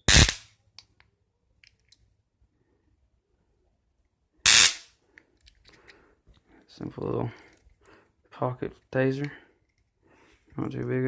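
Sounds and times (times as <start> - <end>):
stun gun crackling zap: 0.1 - 0.5, 4.5 - 4.9.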